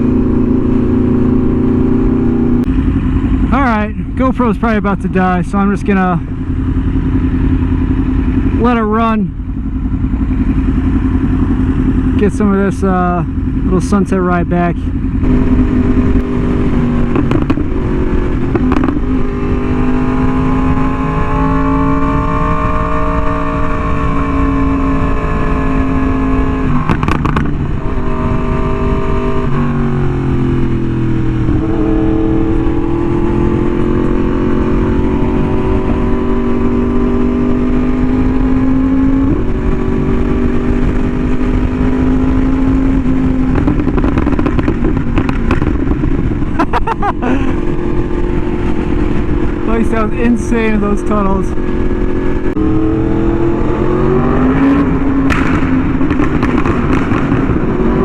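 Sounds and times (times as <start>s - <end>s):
motorcycle engine cruising: 0.0s - 58.0s
wind rumble: 0.0s - 58.0s.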